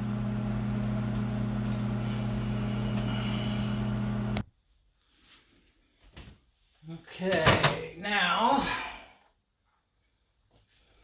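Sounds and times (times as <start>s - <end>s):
microwave oven humming: 0.0s - 4.4s.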